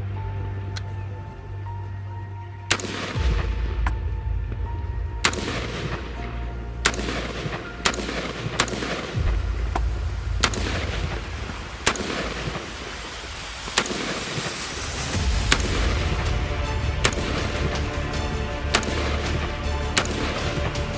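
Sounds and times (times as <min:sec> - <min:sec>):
rifle firing single shots: 0:00.3 - 0:20.9.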